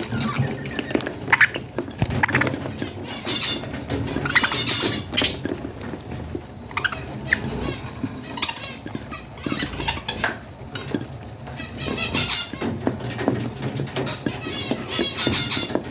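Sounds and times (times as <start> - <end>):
budgie chicks begging chirps: 0.0 - 15.9.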